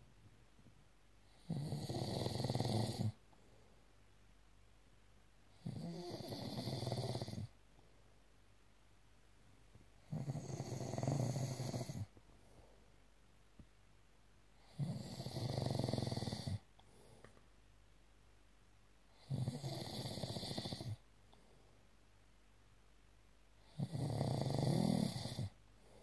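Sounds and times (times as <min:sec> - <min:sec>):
person snoring: 0:01.3 - 0:03.2, 0:05.6 - 0:07.5, 0:10.0 - 0:12.1, 0:14.6 - 0:16.6, 0:19.2 - 0:21.0, 0:23.6 - 0:25.6.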